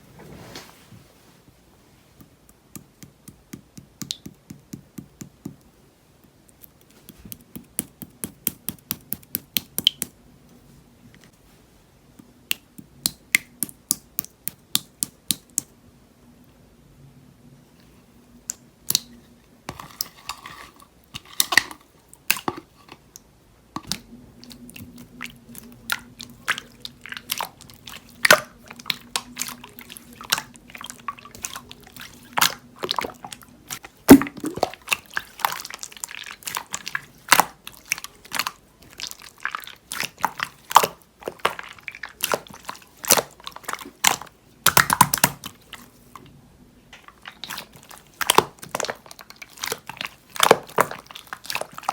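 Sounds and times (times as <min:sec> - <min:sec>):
faint steady hum: 0:00.0 - 0:51.9
slime squishing sticky pops: 0:39.9 - 0:45.6.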